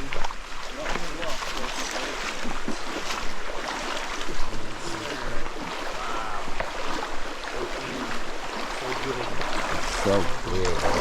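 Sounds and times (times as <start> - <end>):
flowing water rushing: 0.0 - 11.0
faint voices: 4.4 - 6.7.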